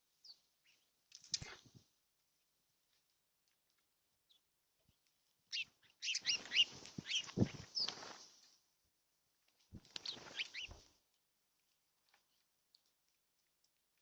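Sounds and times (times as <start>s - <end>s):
birds chirping: 4.3s - 8.1s, 9.9s - 10.8s.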